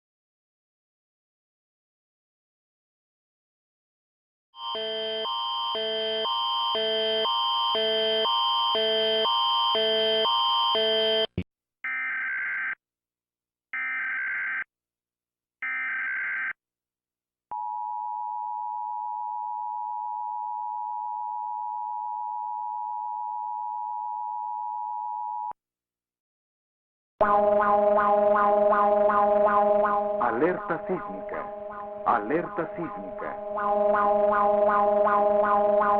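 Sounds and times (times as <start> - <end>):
pulsing alarm tone: 4.6 - 11.3, 27.2 - 35.9
long steady tone: 27.2 - 35.9.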